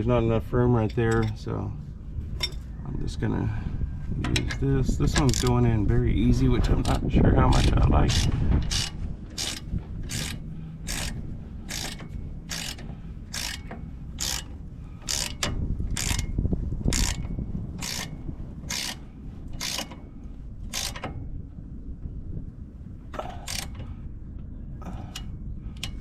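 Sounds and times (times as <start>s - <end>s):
ratchet wrench clicking: 5.2s - 5.6s, 7.5s - 19.0s, 19.6s - 20.0s, 20.7s - 21.1s, 23.4s - 23.8s.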